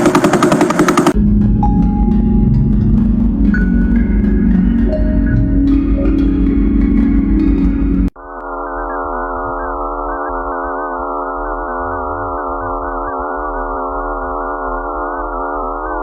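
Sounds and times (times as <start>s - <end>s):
eerie electronic drone: 0.0s - 16.0s.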